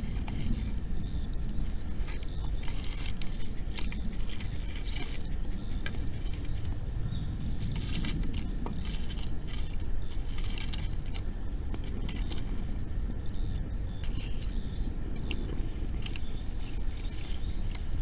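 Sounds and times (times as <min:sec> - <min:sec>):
bonfire crackling and popping: 0:00.0 - 0:18.0
low rumble: 0:00.0 - 0:18.0.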